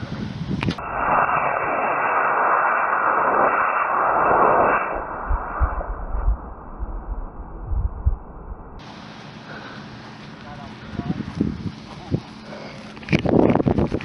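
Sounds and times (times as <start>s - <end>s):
wind on microphone: 0.0s - 8.8s, 10.8s - 12.4s, 13.0s - 14.0s
rocket motor rushing hiss: 0.5s - 7.4s.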